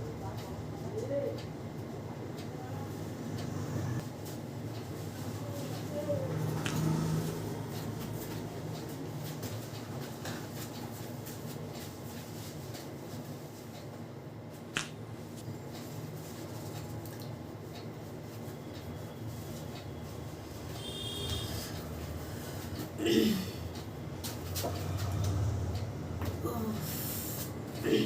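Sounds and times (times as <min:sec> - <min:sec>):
steady low hum: 0:00.0 - 0:28.0
sharp snap: 0:14.8 - 0:15.0.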